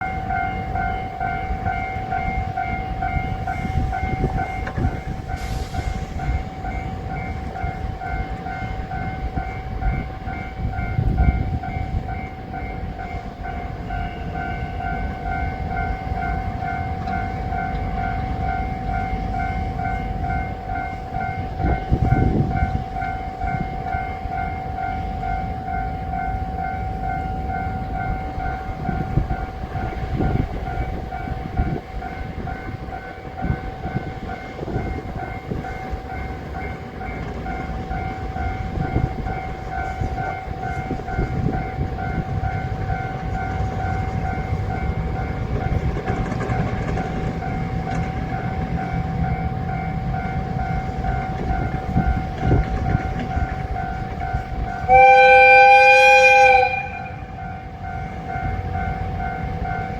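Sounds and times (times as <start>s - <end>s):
level crossing alarm dinging: 0.0s - 59.9s.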